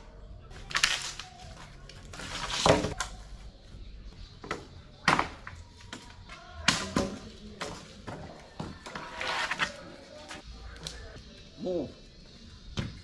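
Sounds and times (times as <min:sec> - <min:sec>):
scraping: 0:07.7 - 0:10.4.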